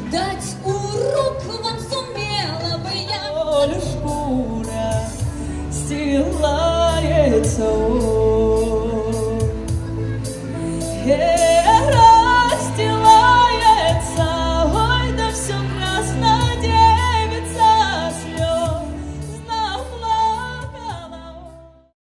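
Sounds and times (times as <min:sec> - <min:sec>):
woman singing: 0:00.0 - 0:09.9, 0:10.8 - 0:21.9
backing track with bass and beat: 0:03.4 - 0:19.6.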